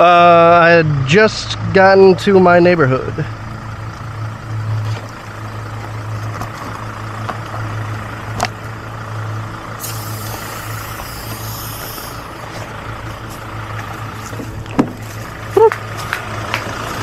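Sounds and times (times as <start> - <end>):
vehicle engine idling: 0.0 - 17.0
high hiss: 9.8 - 12.3.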